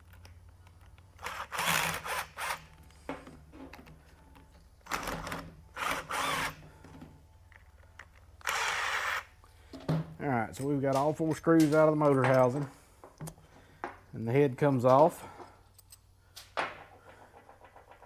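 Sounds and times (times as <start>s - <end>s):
electric drill bursts: 1.2s - 2.7s, 4.9s - 6.6s, 8.4s - 9.3s.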